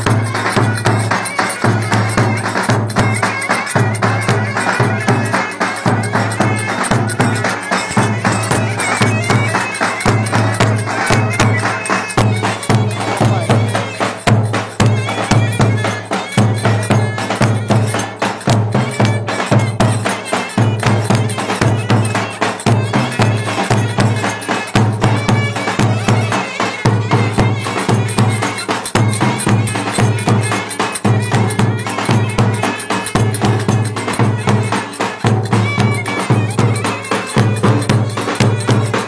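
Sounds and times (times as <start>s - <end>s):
clarinets playing folk melody: 0.0s - 39.0s
low drum beat: 0.0s - 39.0s.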